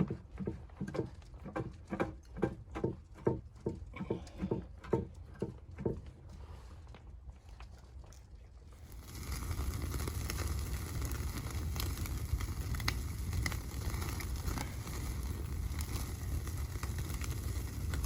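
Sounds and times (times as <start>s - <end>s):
wood fire crackling: 6.9s - 18.0s.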